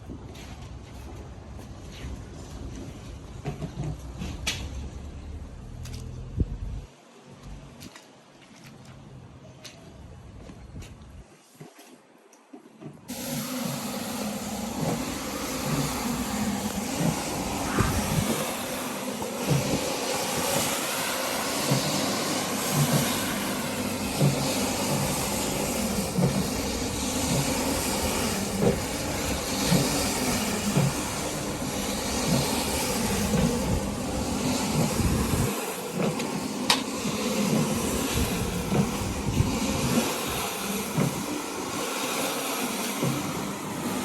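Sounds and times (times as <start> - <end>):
rug cleaning machine hissing: 13.1 - 44.0.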